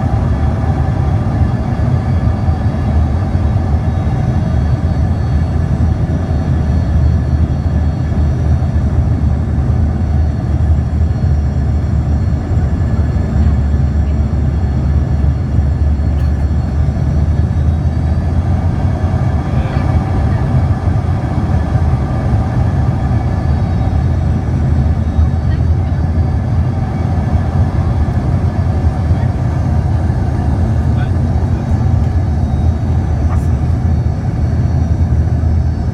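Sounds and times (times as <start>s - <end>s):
aircraft cabin rumble: 0.0s - 35.9s
engine whine tones: 0.0s - 35.9s.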